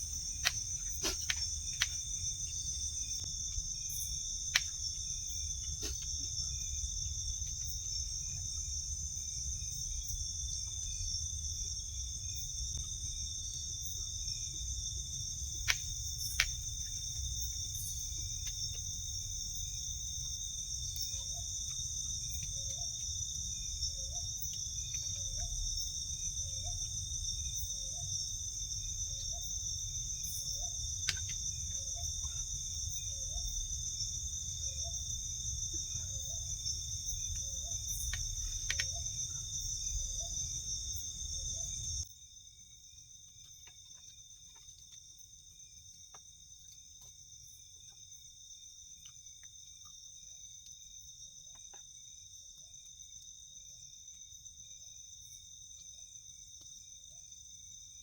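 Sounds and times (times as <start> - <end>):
crickets and insects chorus: 0.0 - 58.0
sharp clicks: 37.4 - 39.0.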